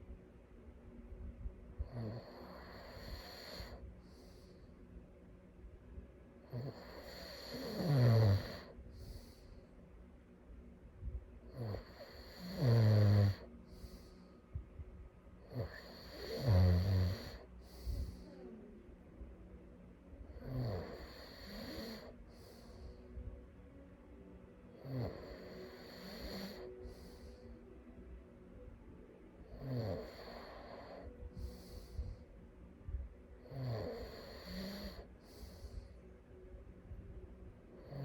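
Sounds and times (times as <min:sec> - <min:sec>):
person snoring: 0:01.8 - 0:03.8, 0:06.5 - 0:09.4, 0:11.5 - 0:14.2, 0:15.4 - 0:18.3, 0:20.3 - 0:22.8, 0:24.8 - 0:27.4, 0:29.5 - 0:32.2, 0:33.4 - 0:35.9.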